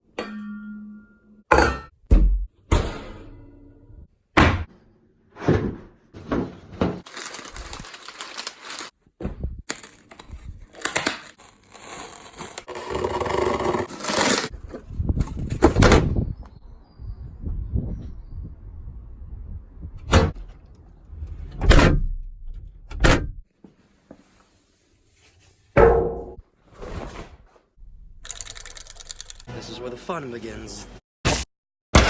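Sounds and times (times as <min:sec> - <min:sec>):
crackling breaking debris: 0:07.0 - 0:09.0
heavy low rumble: 0:17.2 - 0:23.4.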